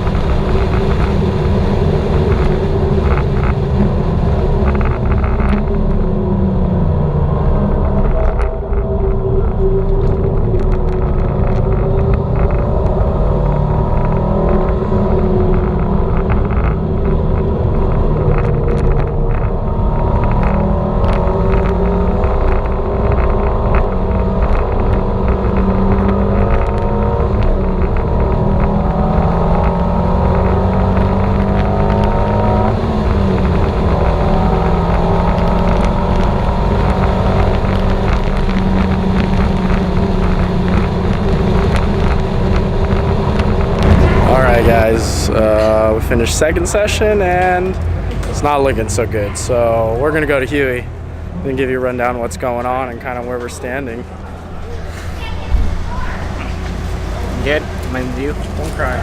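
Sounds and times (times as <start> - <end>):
car engine pulling hard: 0.0 - 59.0
wind noise: 0.0 - 59.0.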